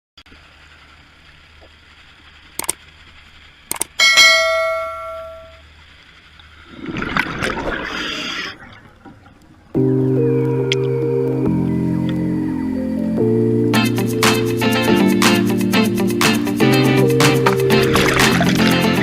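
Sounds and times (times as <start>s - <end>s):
metallic clang ringing: 4.0s - 5.6s
noisy rush: 9.6s - 19.0s.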